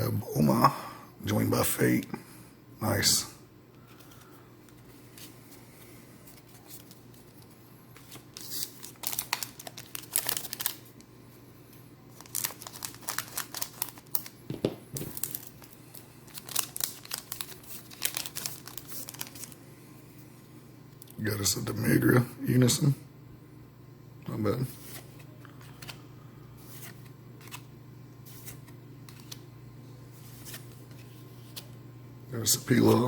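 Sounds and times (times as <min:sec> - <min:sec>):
foil wrapper tearing and crinkling: 0:08.1 - 0:11.0, 0:12.2 - 0:14.4, 0:15.0 - 0:19.6.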